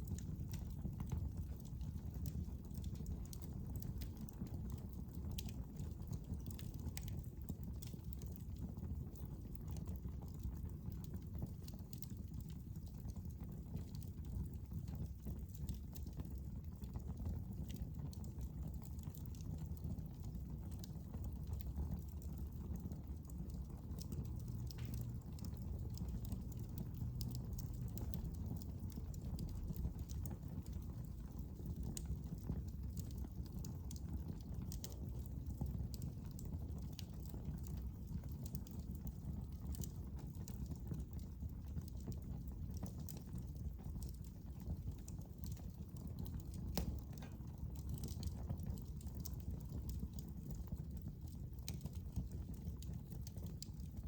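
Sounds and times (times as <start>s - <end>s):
fire crackling and popping: 0.0s - 54.0s
low rumble of flames: 0.0s - 54.0s.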